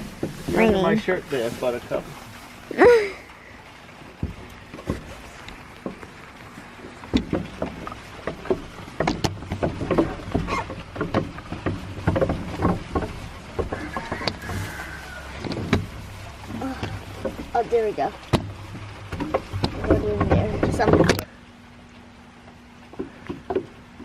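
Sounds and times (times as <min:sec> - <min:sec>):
knocks clunks and scuffs: 0:06.8 - 0:17.6.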